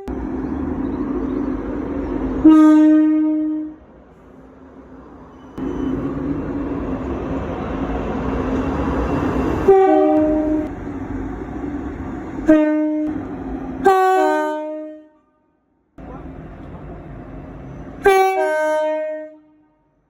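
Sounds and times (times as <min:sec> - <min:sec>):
running train noise: 0:00.0 - 0:15.2, 0:16.0 - 0:20.0
two-tone train horn: 0:02.4 - 0:03.9, 0:09.6 - 0:10.7, 0:12.4 - 0:13.2, 0:13.8 - 0:15.5, 0:18.0 - 0:19.9.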